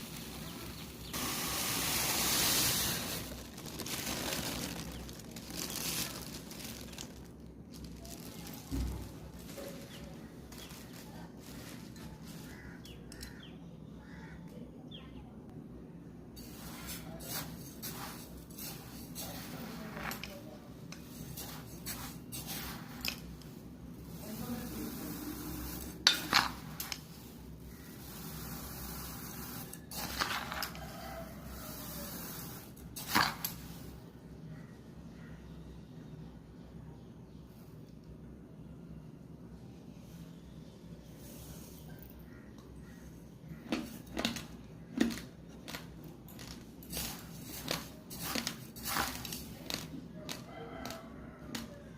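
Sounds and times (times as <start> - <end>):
crunching raw rice: 0.0 - 13.3, 16.4 - 33.9, 43.6 - 51.9.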